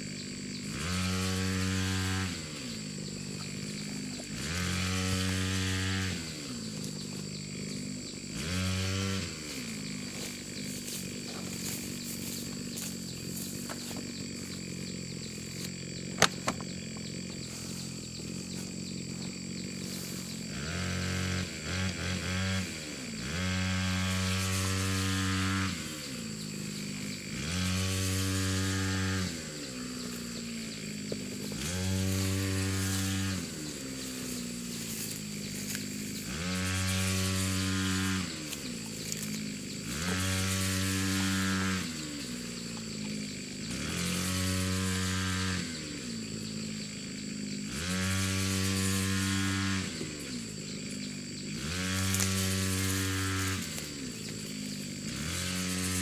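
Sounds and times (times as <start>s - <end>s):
small engine revving up and down: 0.0s - 56.0s.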